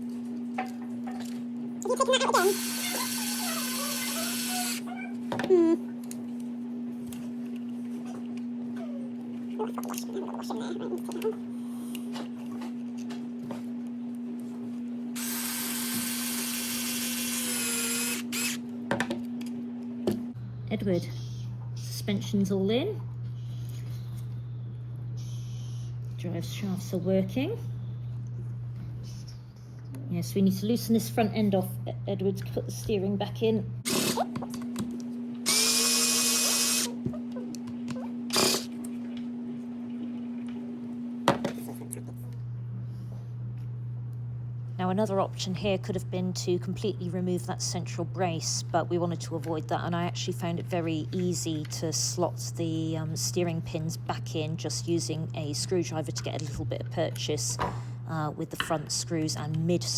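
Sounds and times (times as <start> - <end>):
power screwdriver whine: 2.5 - 4.8, 15.2 - 18.6, 33.9 - 34.2, 35.5 - 36.9, 38.3 - 38.7.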